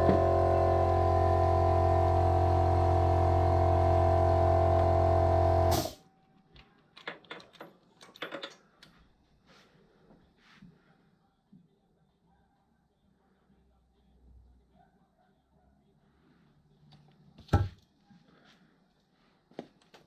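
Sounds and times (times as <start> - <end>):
loud drone of held tones: 0.0 - 5.8
faint clicks and knocks: 6.3 - 9.0.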